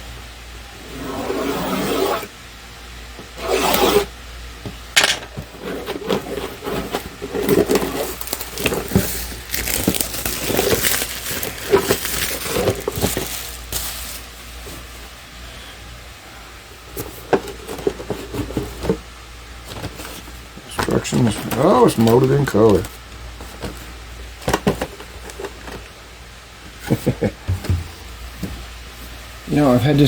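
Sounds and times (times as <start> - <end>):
cardboard box opening: 5.7 - 14.3
plastic parts rustling and clicking: 7.0 - 14.3, 19.7 - 25.9
shrink-wrap tearing and crinkling: 7.4 - 14.5, 20.8 - 22.9.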